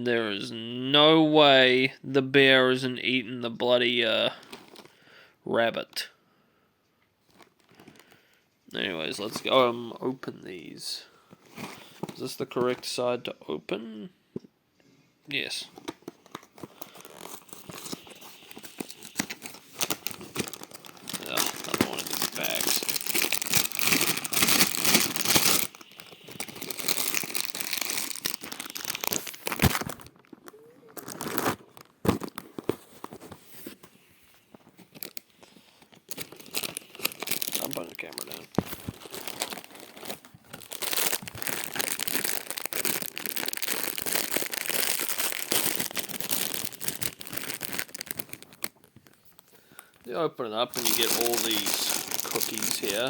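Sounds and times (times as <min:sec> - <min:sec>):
plastic bag crinkling: 0:15.4 - 0:33.3, 0:34.6 - 0:53.0.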